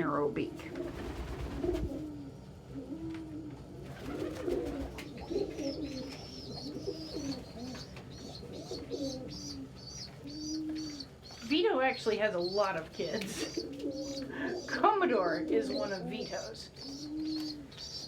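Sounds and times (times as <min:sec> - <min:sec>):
pigeons cooing: 0:00.6 - 0:18.0.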